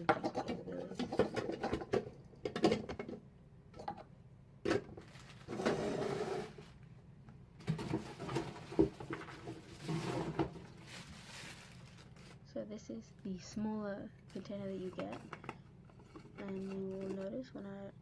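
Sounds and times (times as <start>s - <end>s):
rustling: 5.0s - 6.9s, 7.6s - 12.5s.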